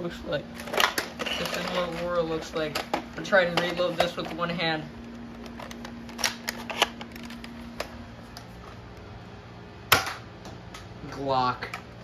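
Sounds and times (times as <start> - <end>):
loud plastic snap: 5.4 - 7.9, 9.9 - 10.9.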